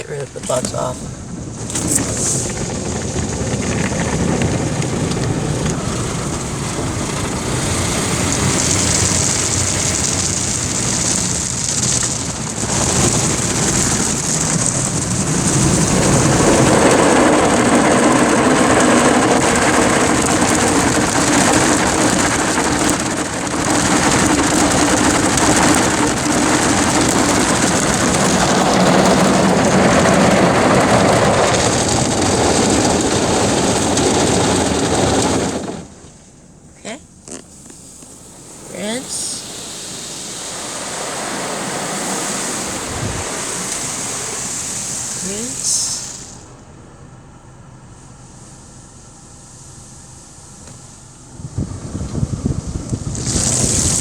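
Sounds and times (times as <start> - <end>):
water spray in car wash: 0.0 - 54.0
rotating brushes hitting car body: 37.1 - 46.6.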